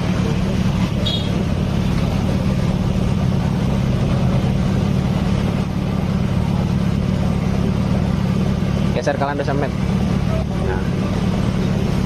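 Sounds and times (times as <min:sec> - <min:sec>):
motorcycle engine idling: 0:00.0 - 0:12.0.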